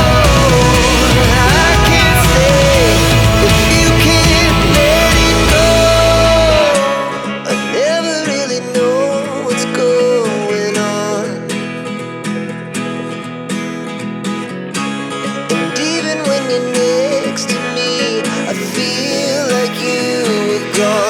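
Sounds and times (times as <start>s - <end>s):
deep bass: 0.0s - 6.8s
acoustic guitar music: 0.0s - 21.0s.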